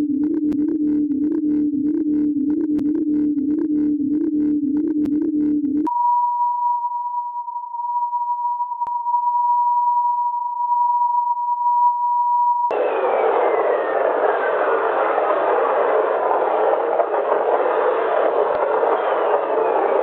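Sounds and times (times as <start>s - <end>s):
faint whistle gliding down: 12.7s - 20.0s
steady pure electronic tone: 12.7s - 20.0s.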